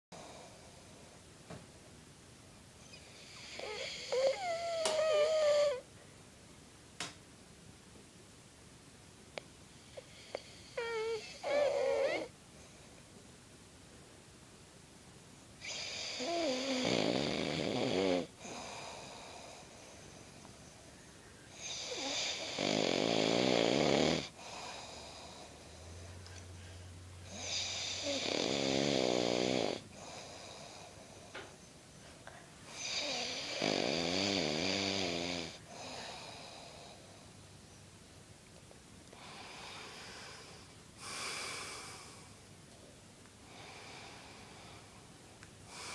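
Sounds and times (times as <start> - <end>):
person snoring: 3.2 - 5.8, 10.0 - 12.3, 15.6 - 19.7, 21.6 - 26.0, 27.2 - 31.4, 32.8 - 37.1.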